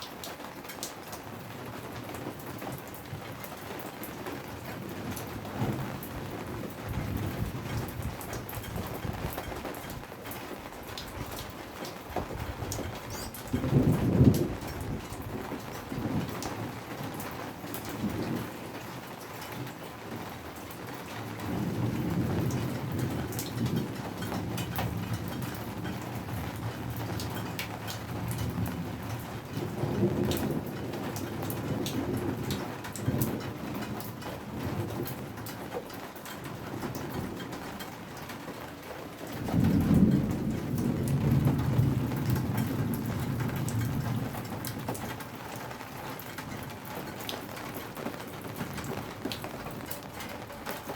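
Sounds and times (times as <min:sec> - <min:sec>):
steady rain with drops ticking: 0:00.0 - 0:50.9
distant thunder rumbling: 0:04.6 - 0:10.0, 0:10.8 - 0:18.9, 0:39.3 - 0:50.9.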